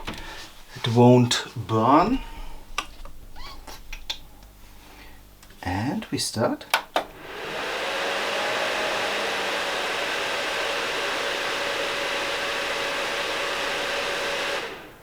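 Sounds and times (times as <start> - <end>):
computer cooling fans whooshing: 7.1 - 15.0.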